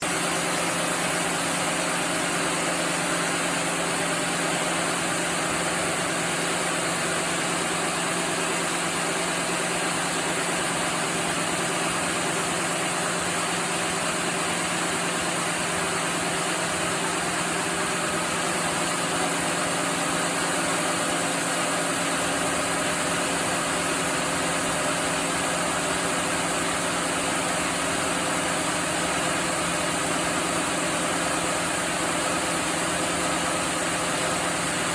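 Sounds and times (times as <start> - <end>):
sawmill machinery humming: 0.0 - 34.9.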